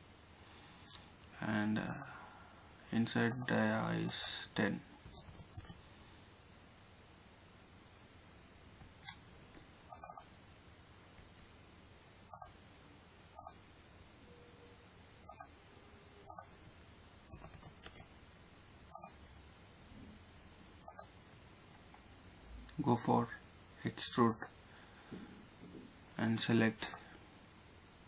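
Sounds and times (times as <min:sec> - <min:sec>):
computer mouse clicking: 0:01.9 - 0:02.2, 0:03.3 - 0:04.4, 0:05.0 - 0:05.8, 0:09.0 - 0:10.3, 0:12.3 - 0:12.6, 0:13.4 - 0:13.6, 0:15.2 - 0:15.6, 0:16.2 - 0:16.6, 0:17.3 - 0:18.1, 0:18.9 - 0:19.2, 0:20.8 - 0:21.2, 0:24.2 - 0:24.6, 0:26.8 - 0:27.1.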